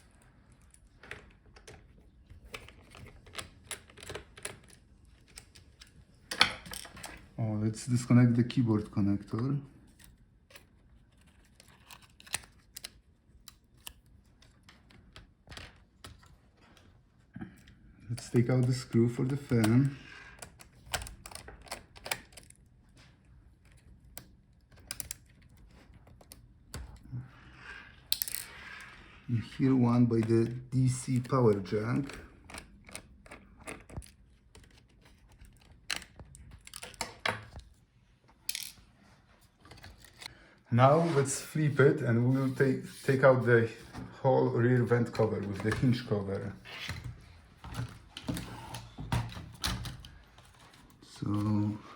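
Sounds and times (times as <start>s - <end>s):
tool clicking on plastic parts: 18.2s - 22.6s, 31.0s - 37.6s.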